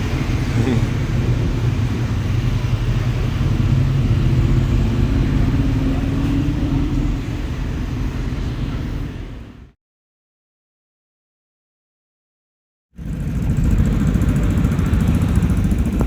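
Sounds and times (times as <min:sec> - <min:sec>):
vehicle low rumble: 0:00.0 - 0:09.7, 0:13.0 - 0:16.0.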